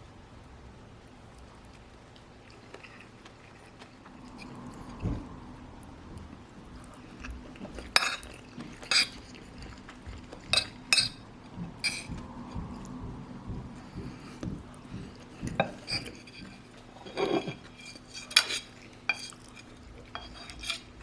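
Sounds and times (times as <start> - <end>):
spoon clinking against plate: 7.9 - 9.7, 10.4 - 12.2, 15.5 - 20.9.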